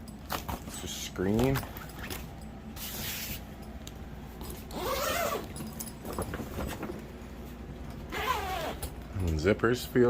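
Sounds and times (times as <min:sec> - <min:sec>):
zipper zipping: 0:04.7 - 0:05.5, 0:08.1 - 0:08.9.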